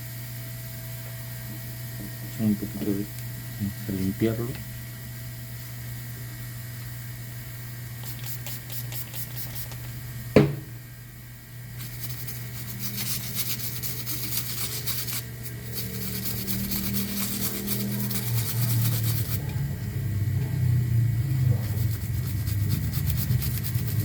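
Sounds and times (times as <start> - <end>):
steady low hum: 0.0 - 24.0
brush scrubbing circuit board: 8.0 - 9.9, 11.8 - 19.5, 21.2 - 24.0.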